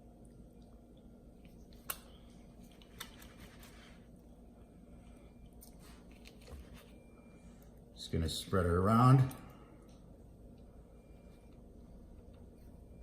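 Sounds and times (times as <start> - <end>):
wet squishing: 0.0 - 4.1
low steady hum: 0.0 - 13.0.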